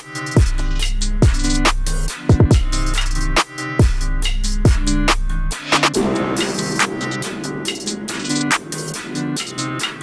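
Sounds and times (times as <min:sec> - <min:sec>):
electronic drum and bass music: 0:00.0 - 0:10.0.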